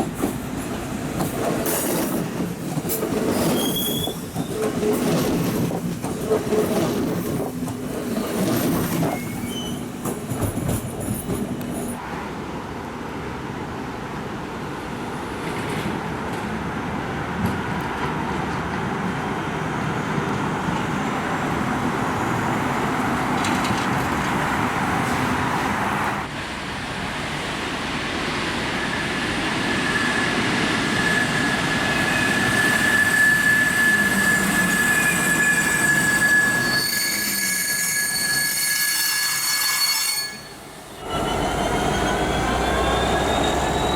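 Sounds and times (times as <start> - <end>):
train rolling slowly: 0.0 - 12.0, 13.2 - 43.9
high wheel squeal: 3.4 - 4.7, 8.1 - 12.0, 29.7 - 43.9.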